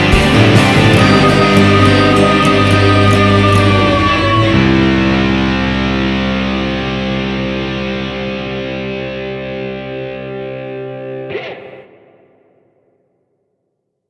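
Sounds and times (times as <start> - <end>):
distorted electric guitar: 0.0 - 13.0.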